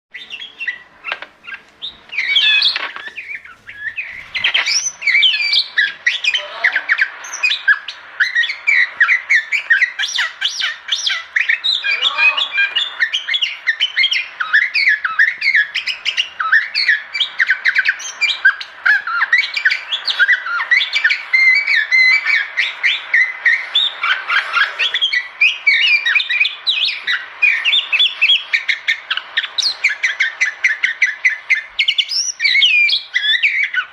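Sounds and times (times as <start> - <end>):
birds chirping: 0.1 - 33.9.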